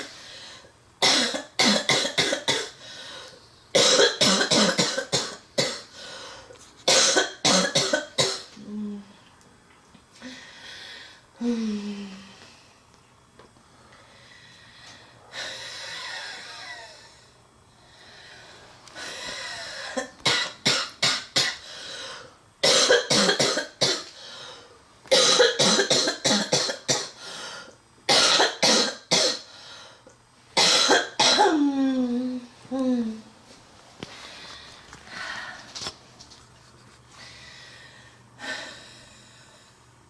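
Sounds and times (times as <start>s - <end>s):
girl coughing: 1.0s - 2.8s, 3.8s - 5.9s, 6.9s - 8.6s, 22.6s - 24.1s, 25.1s - 27.2s, 28.1s - 29.5s, 30.6s - 32.0s
wheezy breaths: 5.9s - 6.7s, 13.7s - 20.0s, 37.1s - 39.9s.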